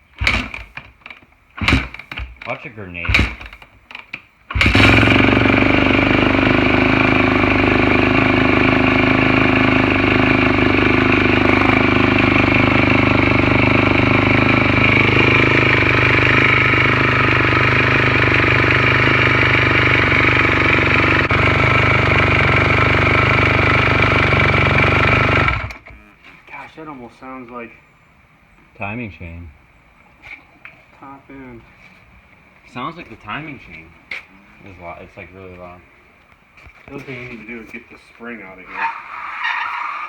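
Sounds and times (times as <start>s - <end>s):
engine top-end slapping noise: 0.0s - 5.8s
dirt bike engine idling: 0.1s - 1.0s, 1.6s - 3.7s, 4.5s - 26.2s.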